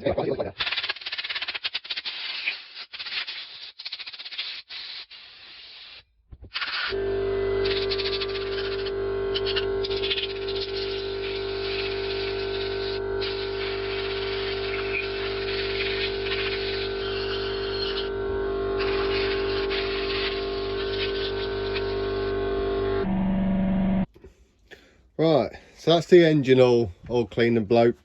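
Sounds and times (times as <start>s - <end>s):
blow gun hissing: 0.6s - 7.0s, 7.6s - 18.1s, 18.7s - 22.0s
air compressor humming: 6.9s - 24.3s.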